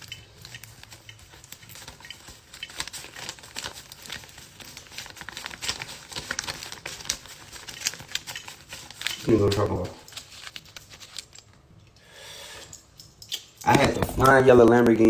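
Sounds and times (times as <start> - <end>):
rustling and crackling: 0.0 - 11.7.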